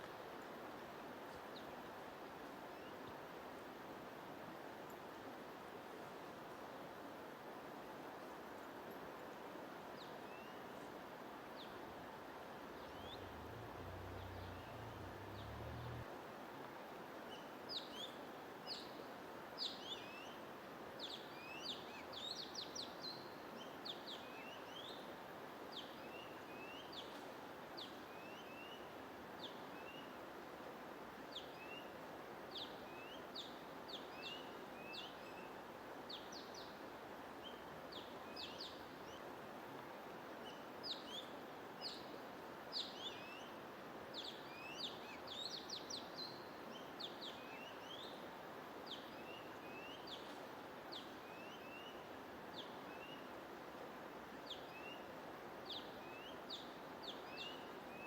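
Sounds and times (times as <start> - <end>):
small birds chirping: 12.8 - 16.0
low rumble: 12.9 - 16.1.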